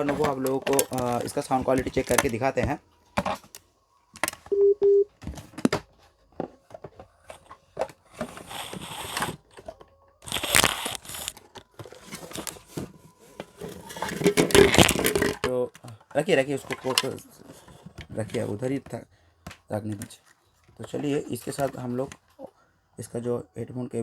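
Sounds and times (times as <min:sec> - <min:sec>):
handling clicks and knocks: 0:00.0 - 0:03.6, 0:04.2 - 0:22.4
rustling: 0:00.0 - 0:04.6, 0:05.2 - 0:22.7
short electronic beeps: 0:04.5 - 0:05.1.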